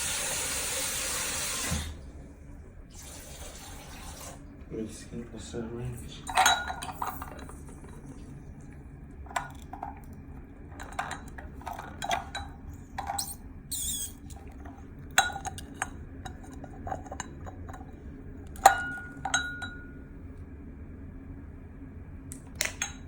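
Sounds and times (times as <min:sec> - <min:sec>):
glass bottles knocking and clinking: 0:06.2 - 0:08.0, 0:10.7 - 0:13.4, 0:18.6 - 0:20.0
high squeak: 0:13.2 - 0:14.2
ringing glass clink: 0:18.7 - 0:20.0.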